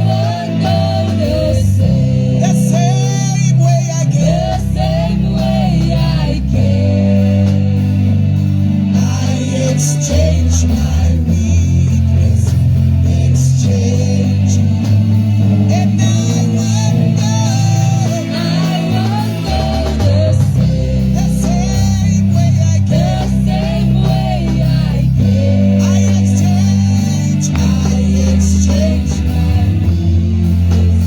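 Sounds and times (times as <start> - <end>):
bass guitar line: 0.0 - 31.0
worship band playing: 0.0 - 31.0
person singing: 8.9 - 31.0.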